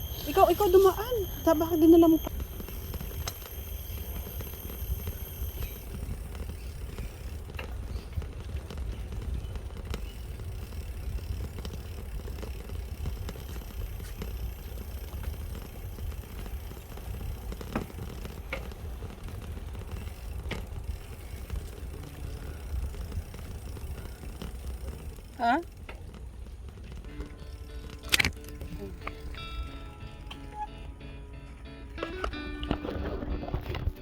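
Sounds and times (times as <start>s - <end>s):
wind rumble on microphone: 2.1s - 25.4s.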